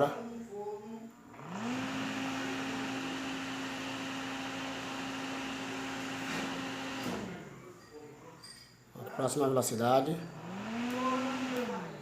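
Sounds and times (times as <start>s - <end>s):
fan motor humming: 1.3s - 7.6s, 10.3s - 12.0s.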